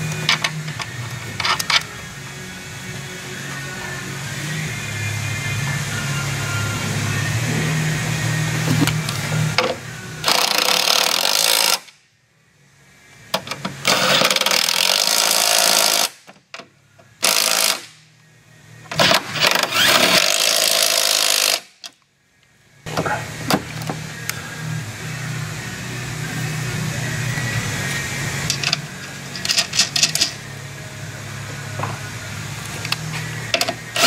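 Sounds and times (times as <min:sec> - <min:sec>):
pneumatic impact wrench: 0:08.6 - 0:12.0, 0:13.3 - 0:16.4, 0:17.2 - 0:18.0, 0:18.9 - 0:22.0, 0:28.4 - 0:30.4, 0:32.9 - 0:34.0.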